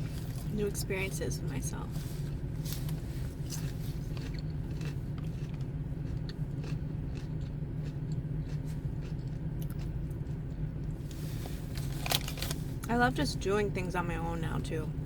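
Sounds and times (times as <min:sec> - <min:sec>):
car hum: 0:00.0 - 0:15.0
chewing and biting food: 0:02.2 - 0:11.1.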